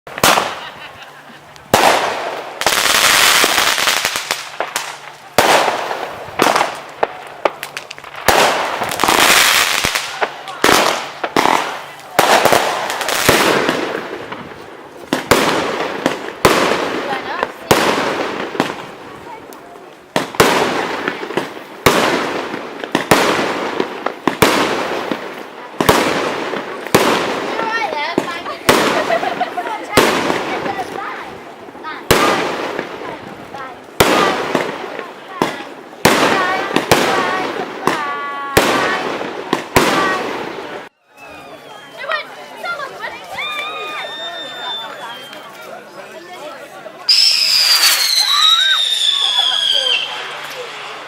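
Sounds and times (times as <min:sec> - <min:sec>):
small fireworks pops: 0:00.1 - 0:40.9, 0:43.5 - 0:45.8, 0:47.0 - 0:51.0
fireworks bangs: 0:00.1 - 0:42.2, 0:47.0 - 0:51.0
fireworks crackling hiss: 0:00.1 - 0:42.2, 0:42.8 - 0:51.0.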